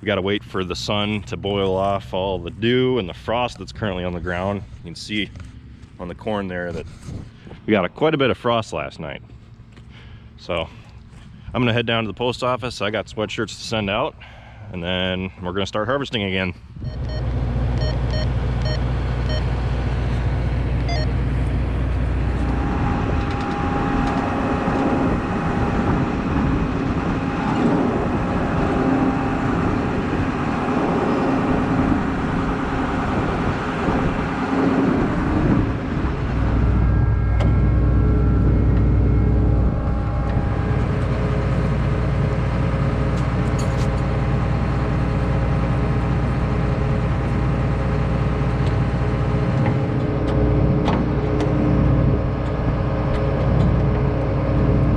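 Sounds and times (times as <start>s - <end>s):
vehicle engine and road noise: 0.0s - 54.9s
short high beeps: 20.9s - 21.1s.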